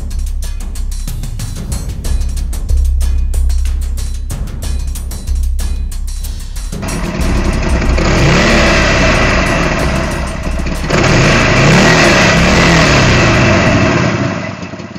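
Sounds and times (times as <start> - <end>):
motorcycle engine revving: 5.6 - 14.9.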